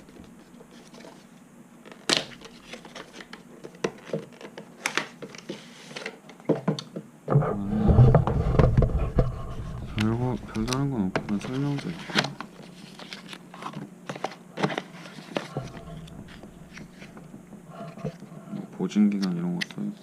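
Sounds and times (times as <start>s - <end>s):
packaging rubbing and scraping: 7.4s - 18.6s.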